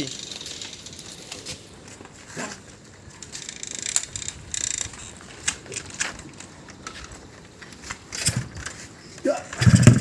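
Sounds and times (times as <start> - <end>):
mechanical ratcheting clicks: 3.4 - 5.0.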